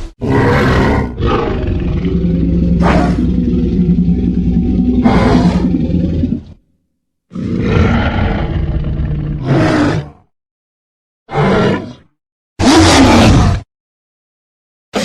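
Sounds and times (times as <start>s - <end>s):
deep creature roar: 0.2s - 6.6s, 7.3s - 10.3s, 11.3s - 13.7s.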